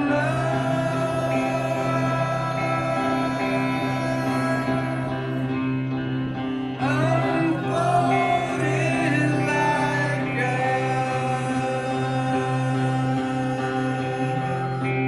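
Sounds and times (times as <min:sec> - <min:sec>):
man singing: 0:00.0 - 0:06.0, 0:06.7 - 0:15.0
rock band playing: 0:00.0 - 0:15.0.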